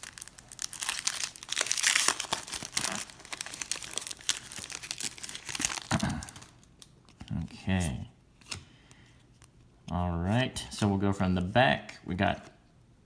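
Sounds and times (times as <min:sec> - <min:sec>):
card pack wrapper crinkling and tearing: 0:00.0 - 0:08.6.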